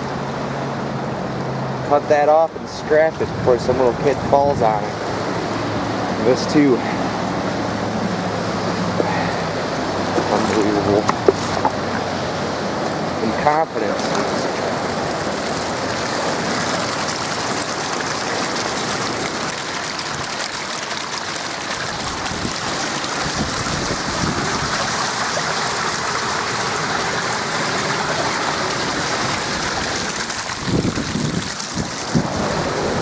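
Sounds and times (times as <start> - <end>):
river water rushing through dam gates: 0.0 - 33.0
wind buffeting microphone: 21.9 - 25.1, 28.1 - 33.0.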